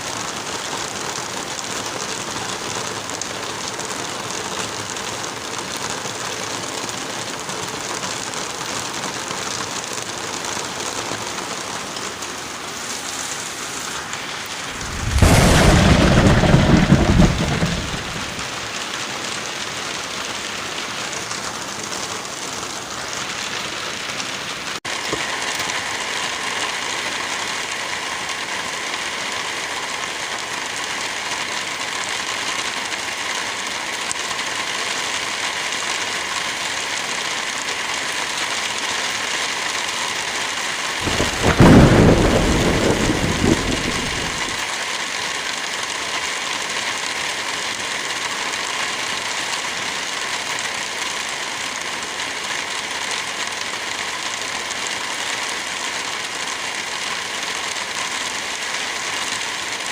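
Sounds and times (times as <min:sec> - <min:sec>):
steady rain: 0:00.0 - 0:59.9
thunder rumbling: 0:14.5 - 0:18.9, 0:41.0 - 0:44.6.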